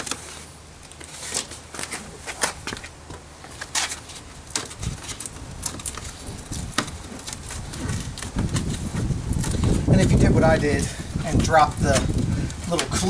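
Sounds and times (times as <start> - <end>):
plastic sheet rustling: 3.5 - 10.3.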